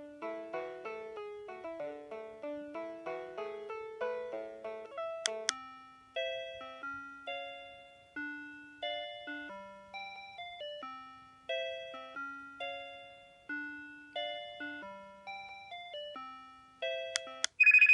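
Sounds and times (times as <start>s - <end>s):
phone ringtone chiming melody: 5.6s - 17.9s.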